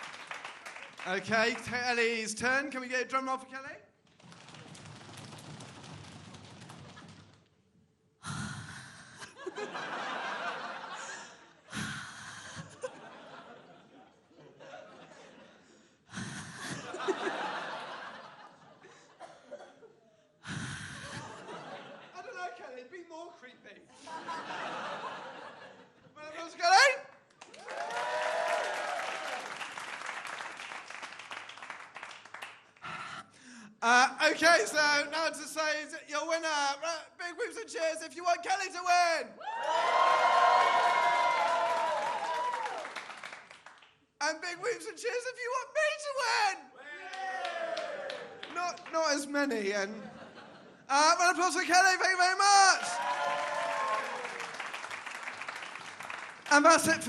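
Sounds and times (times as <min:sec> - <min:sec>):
audience applauding: 0:00.0 - 0:01.9, 0:04.1 - 0:07.5, 0:27.3 - 0:33.1, 0:39.6 - 0:44.0, 0:47.0 - 0:48.9, 0:52.6 - 0:57.0
people cheering: 0:27.4 - 0:31.0, 0:39.4 - 0:43.4, 0:46.8 - 0:48.6, 0:52.5 - 0:56.3.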